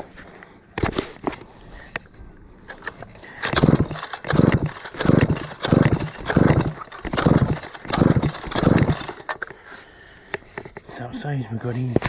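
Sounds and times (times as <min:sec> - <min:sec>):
chainsaw engine turning over: 0:02.7 - 0:09.4
recoil starter rope rasp: 0:03.4 - 0:09.3.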